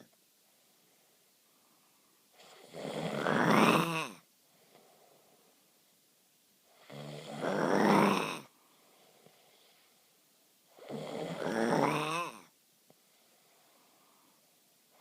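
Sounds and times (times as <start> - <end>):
faint breathing: 0.0 - 2.8, 4.4 - 6.0, 8.4 - 10.9, 12.9 - 15.0
person snoring: 2.4 - 4.8, 6.8 - 9.5, 10.7 - 12.5.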